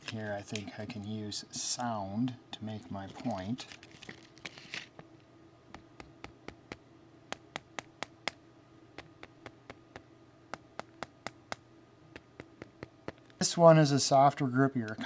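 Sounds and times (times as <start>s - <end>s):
clicks and taps on plastic grip: 5.7s - 8.4s, 9.0s - 11.6s, 12.2s - 13.4s.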